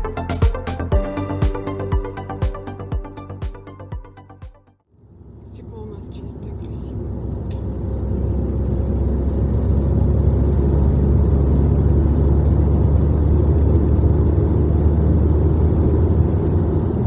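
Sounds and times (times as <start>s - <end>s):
car cabin road rumble: 5.2s - 17.0s.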